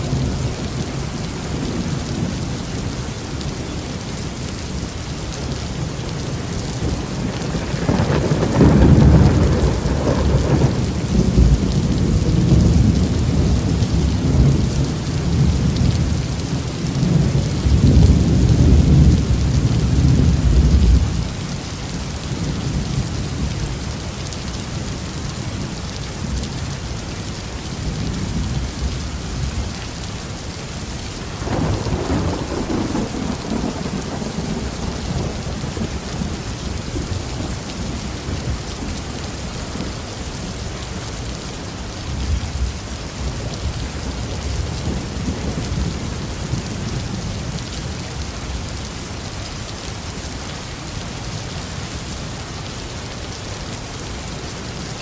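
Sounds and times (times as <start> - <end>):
heavy rain on a roof: 0.0 - 55.0
deep thunder rumble: 6.7 - 16.2, 31.3 - 39.0.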